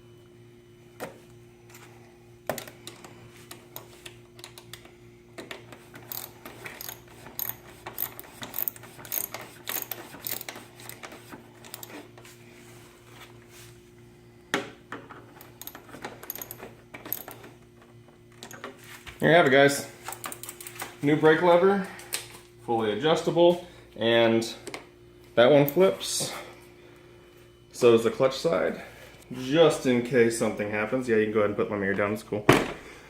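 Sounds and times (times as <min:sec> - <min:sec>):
steady low hum: 0:00.0 - 0:33.0
socket ratchet clicking: 0:06.0 - 0:11.0.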